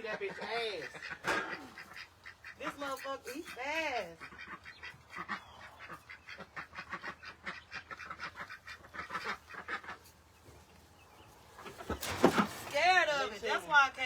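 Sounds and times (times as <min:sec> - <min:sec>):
ducks quacking: 0:00.0 - 0:10.6.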